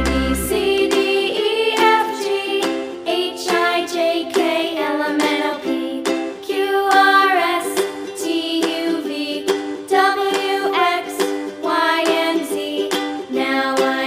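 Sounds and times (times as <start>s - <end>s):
sung melody sliding between notes: 0.0s - 1.4s
plucked ukulele: 0.0s - 14.0s
upbeat children's music: 0.0s - 14.0s.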